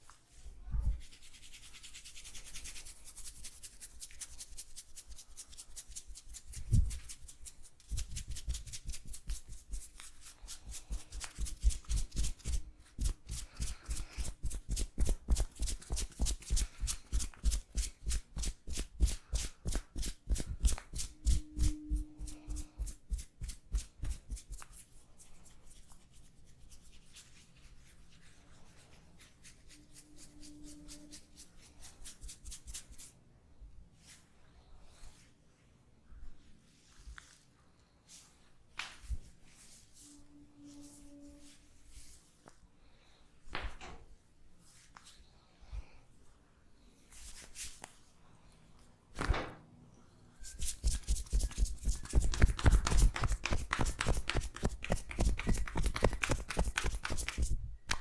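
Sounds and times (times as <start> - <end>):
hands rubbing hair: 0.0 - 33.2, 36.7 - 37.5, 47.1 - 48.1, 50.4 - 57.6.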